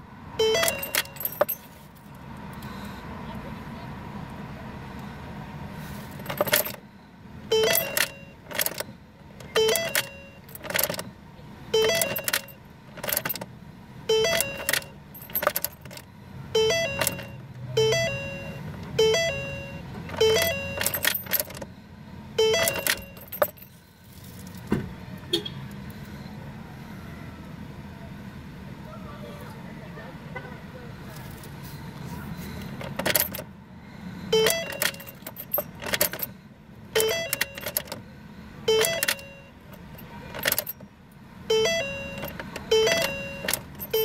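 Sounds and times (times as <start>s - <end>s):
keychain jangling: 0.6s - 2.2s, 6.1s - 6.8s, 14.3s - 16.0s, 20.1s - 21.6s, 22.6s - 24.7s, 34.4s - 36.3s, 37.1s - 38.0s, 38.8s - 40.8s, 42.2s - 44.0s
ignition key click: 38.7s - 39.3s.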